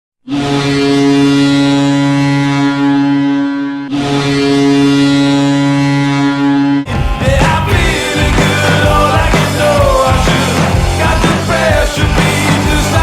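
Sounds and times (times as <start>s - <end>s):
hockey goal horn blasts: 0.2s - 6.9s.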